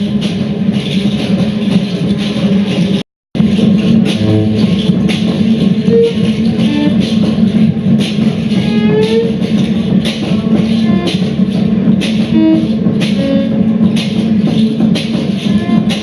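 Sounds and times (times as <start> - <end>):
low drone: 3.4 - 14.6
short pitched notes: 4.0 - 7.1.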